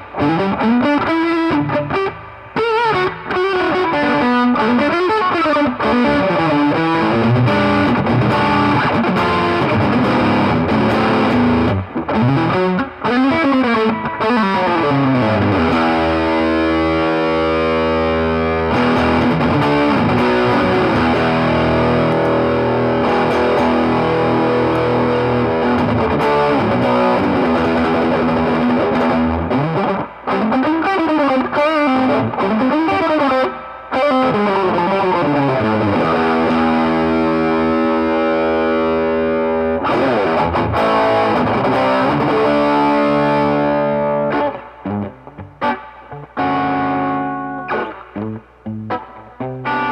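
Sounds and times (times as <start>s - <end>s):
distorted electric guitar: 0.0s - 49.9s.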